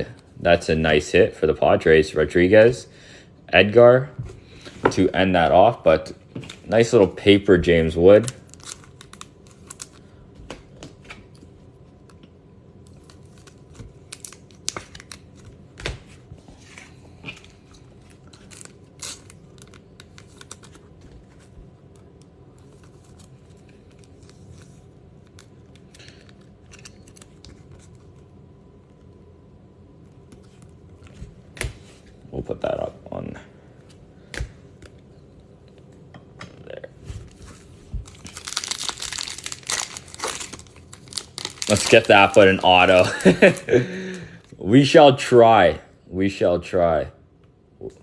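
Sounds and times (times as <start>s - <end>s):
faint steady hum: 0.0s - 48.0s
foil wrappers crinkling and tearing: 8.2s - 10.2s, 12.8s - 15.6s, 16.7s - 21.4s, 22.6s - 27.9s, 37.3s - 44.1s.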